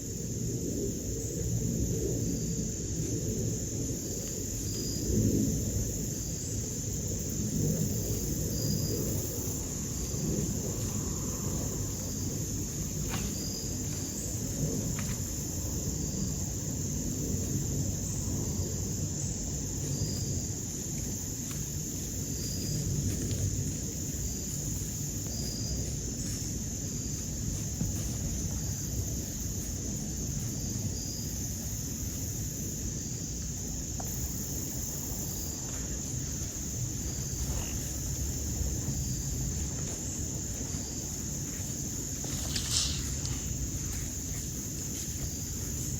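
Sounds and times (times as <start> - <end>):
crickets and insects trilling: 0.0 - 45.9.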